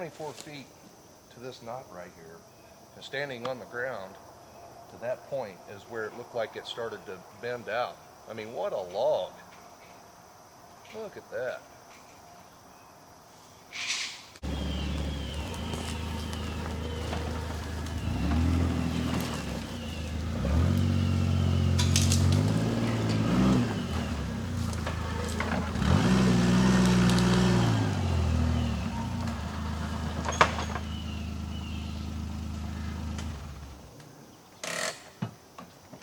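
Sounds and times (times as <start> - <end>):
utility vehicle engine revving: 14.4 - 33.9.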